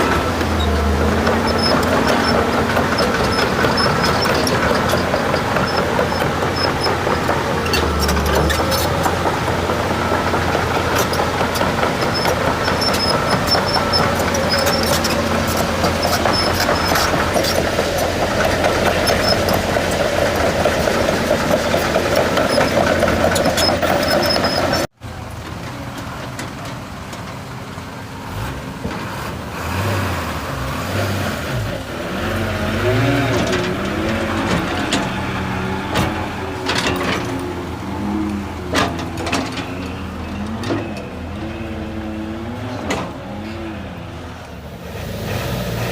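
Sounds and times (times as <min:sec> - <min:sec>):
heavy diesel machinery running: 0:00.0 - 0:45.9
engine with rising and falling pitch: 0:28.2 - 0:45.9.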